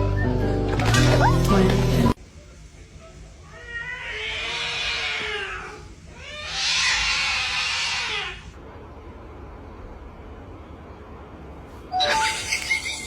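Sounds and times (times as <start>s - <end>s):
cat yowling: 3.6s - 8.5s.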